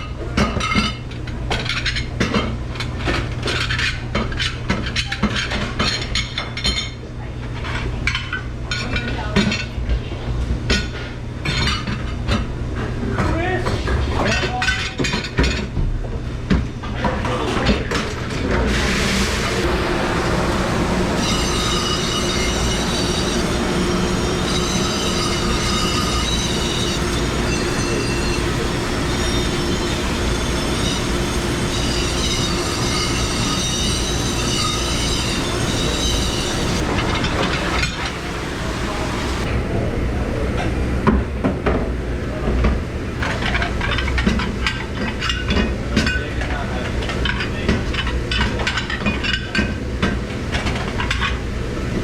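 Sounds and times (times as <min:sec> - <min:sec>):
dishes and utensils clattering: 0:00.4 - 0:07.0, 0:10.7 - 0:12.5, 0:21.2 - 0:38.2, 0:43.2 - 0:51.5
kitchen machinery humming: 0:12.8 - 0:40.0
high-pitched squealing whine: 0:19.4 - 0:39.5.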